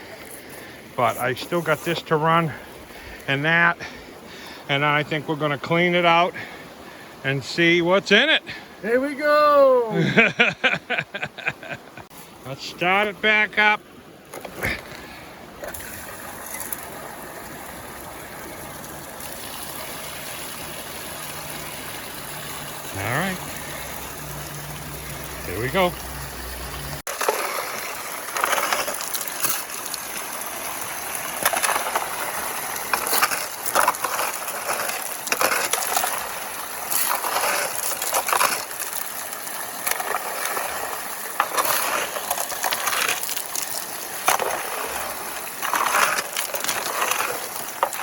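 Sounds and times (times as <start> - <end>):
water rushing and splashing: 0.0 - 48.0
gravel and rocks clattering: 14.3 - 17.4, 27.1 - 48.0.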